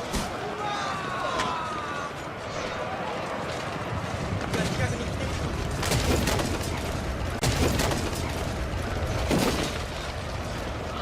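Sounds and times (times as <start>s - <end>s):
sharp cracks and impacts: 5.7s - 10.1s.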